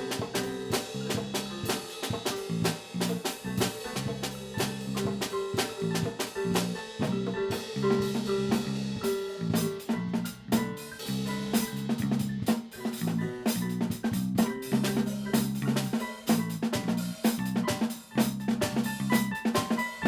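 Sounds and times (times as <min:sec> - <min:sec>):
drum kit beat: 0:00.0 - 0:20.0
sustained low bass notes: 0:02.4 - 0:17.6.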